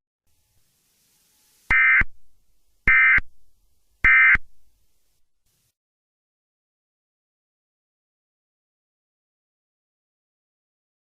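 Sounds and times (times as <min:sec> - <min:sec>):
digital data tone bursts: 0:01.7 - 0:02.1, 0:02.9 - 0:03.3, 0:04.0 - 0:04.4.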